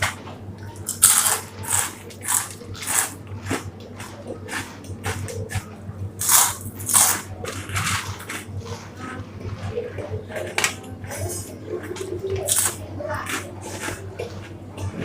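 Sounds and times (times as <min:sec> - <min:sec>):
corn puffs crunching: 0:00.8 - 0:09.6, 0:11.9 - 0:14.6.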